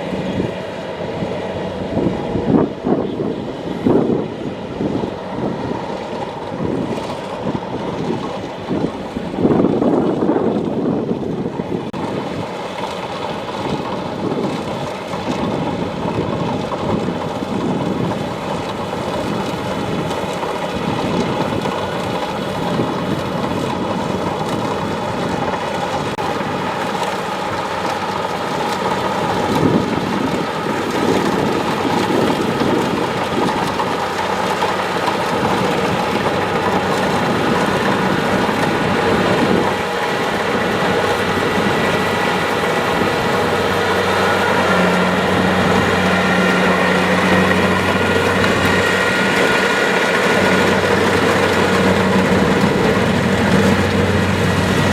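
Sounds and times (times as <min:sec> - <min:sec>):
dense rushing noise: 0:00.0 - 0:54.9
machine whine: 0:12.0 - 0:54.9.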